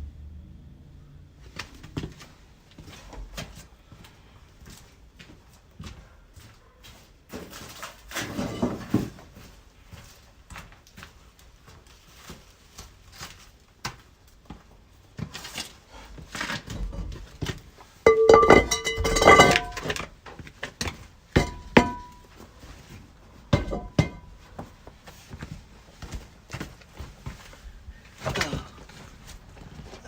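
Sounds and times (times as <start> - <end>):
metal tools clanking: 18.1 - 20.1, 21.4 - 22.3, 23.6 - 24.4
ringing metal clatter: 18.1 - 20.1, 21.4 - 22.3, 23.6 - 24.4.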